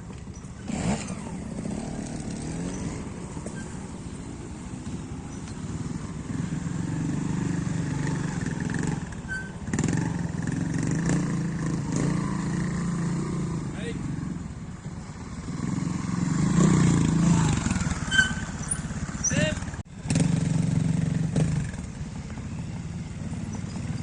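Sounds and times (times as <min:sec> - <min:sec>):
motorcycle engine revving: 0:00.0 - 0:24.0.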